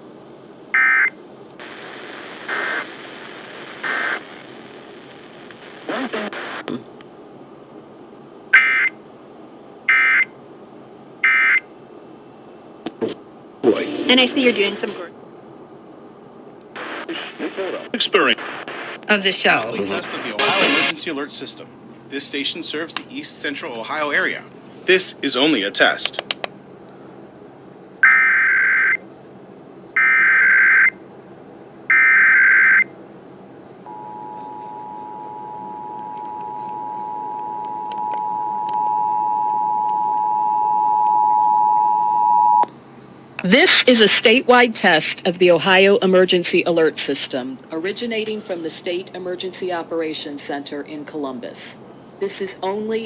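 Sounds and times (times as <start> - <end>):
two-tone attention signal: 33.9 - 42.7.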